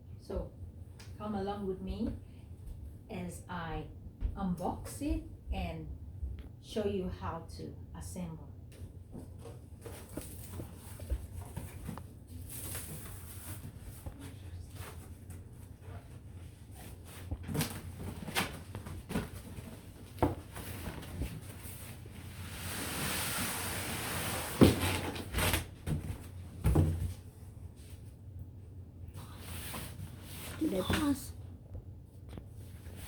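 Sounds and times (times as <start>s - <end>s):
cardboard scraping and rustling: 15.9s - 27.2s.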